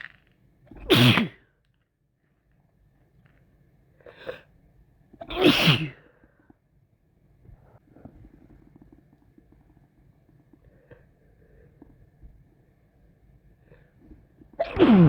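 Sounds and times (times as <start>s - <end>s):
person sneezing: 0.8s - 1.4s, 5.2s - 6.1s, 14.6s - 15.0s.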